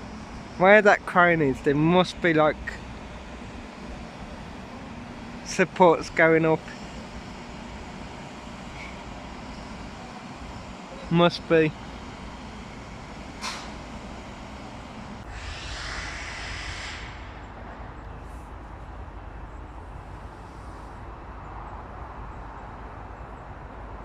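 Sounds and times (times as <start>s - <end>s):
low outdoor rumble: 0.0s - 24.0s
brief hiss: 15.2s - 18.6s.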